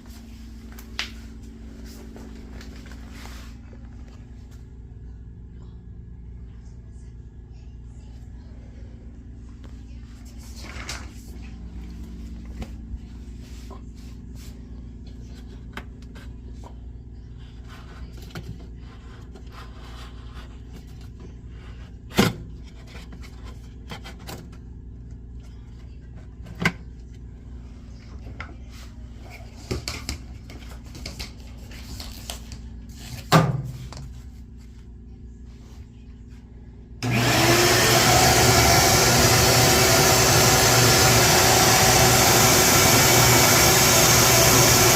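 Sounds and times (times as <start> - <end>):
low steady hum: 0.0 - 37.2
washer drain pump whirring: 37.0 - 44.9.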